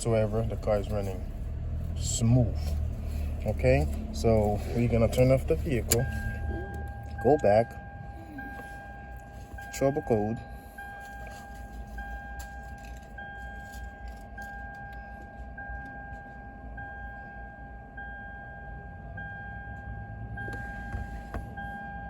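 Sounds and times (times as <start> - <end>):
car engine idling: 0.0 - 22.0
car warning chime: 0.0 - 22.0.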